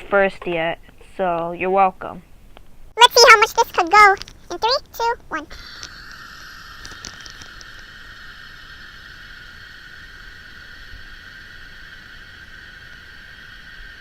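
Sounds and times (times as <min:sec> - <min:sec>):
fidget spinner whirring: 0:03.0 - 0:14.0
small clicks: 0:03.9 - 0:05.0, 0:06.8 - 0:07.9.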